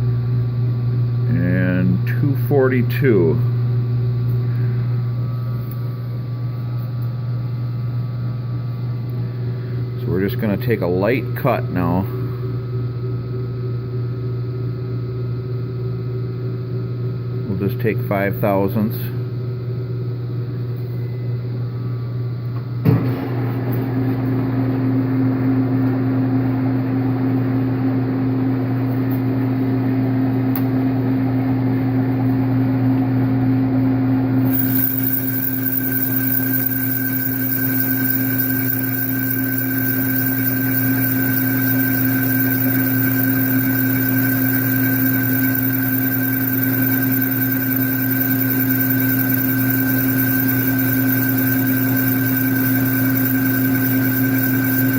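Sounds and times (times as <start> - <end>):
high steady whine: 34.0 - 54.9
metal lathe running: 34.4 - 54.9.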